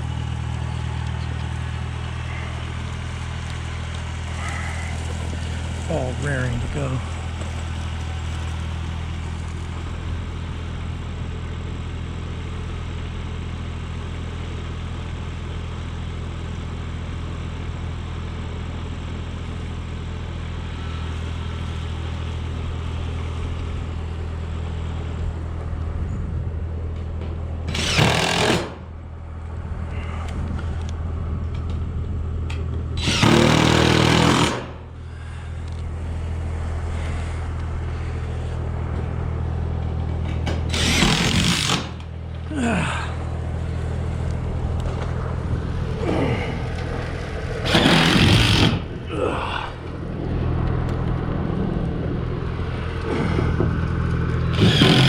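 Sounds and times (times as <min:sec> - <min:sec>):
low engine hum: 0:00.0 - 0:55.0
power drill on metal roof panels: 0:27.2 - 0:29.2, 0:32.5 - 0:36.0, 0:40.0 - 0:42.5, 0:47.4 - 0:49.9, 0:54.3 - 0:55.0.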